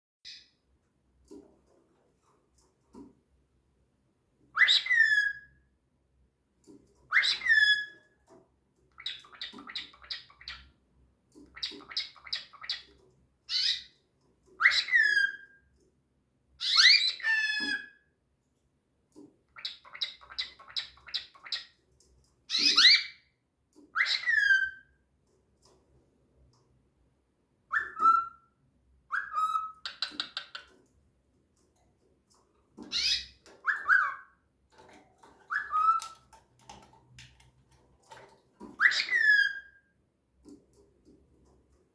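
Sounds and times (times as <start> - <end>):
pet bird whistling and chattering: 14.6 - 15.4, 16.6 - 17.9, 22.5 - 23.2, 24.0 - 24.8, 27.7 - 28.4, 29.1 - 30.6, 32.9 - 34.3, 35.5 - 36.2, 38.8 - 39.7.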